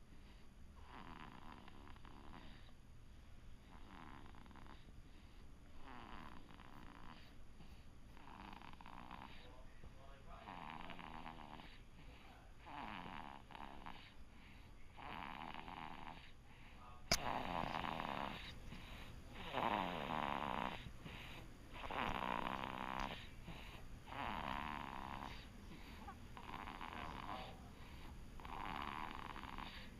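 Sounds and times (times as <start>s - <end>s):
child snoring: 0.8s - 2.7s, 3.7s - 4.9s, 5.8s - 7.3s, 8.2s - 9.5s, 10.4s - 11.8s, 12.6s - 14.2s, 15.0s - 16.3s, 17.1s - 29.9s.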